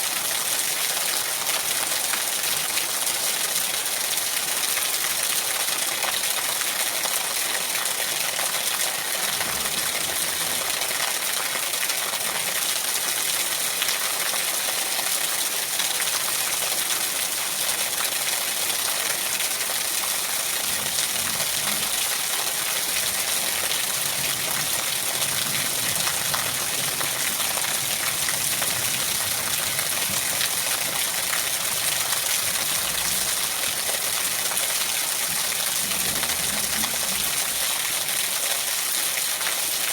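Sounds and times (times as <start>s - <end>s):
steady rain: 0.0s - 39.9s.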